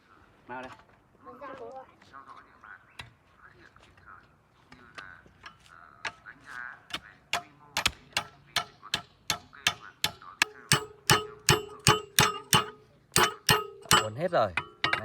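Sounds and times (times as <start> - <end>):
knife striking metal rake tines: 7.8 - 15.0.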